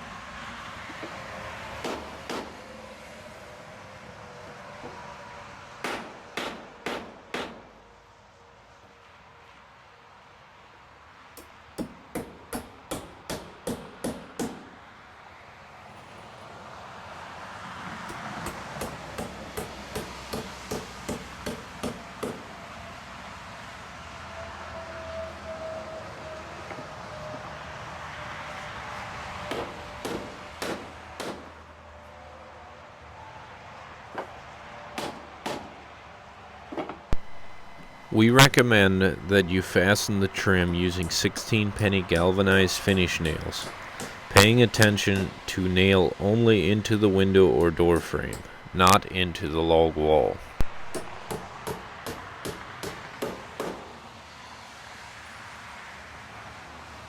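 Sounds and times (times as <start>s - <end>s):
hammer striking nail: 1.8s - 2.6s, 5.8s - 7.8s, 11.4s - 14.8s, 18.1s - 22.6s, 29.5s - 31.5s, 35.0s - 35.7s, 36.8s - 38.1s, 43.6s - 45.5s, 48.3s - 49.0s, 50.6s - 54.0s
steady background hiss: 37.1s - 53.8s.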